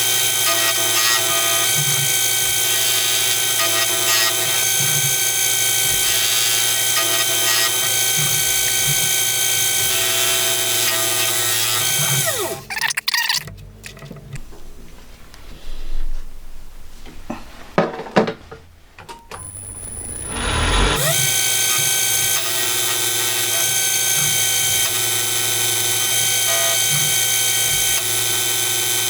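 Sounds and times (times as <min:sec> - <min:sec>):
lathe motor whining: 0:00.0 - 0:12.7, 0:19.4 - 0:29.0.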